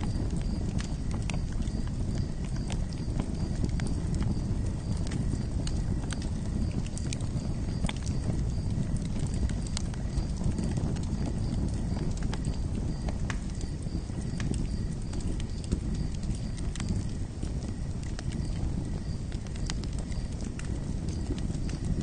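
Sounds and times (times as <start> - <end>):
campfire flames rumbling: 0.0 - 22.0
wood crackling and popping: 0.0 - 22.0.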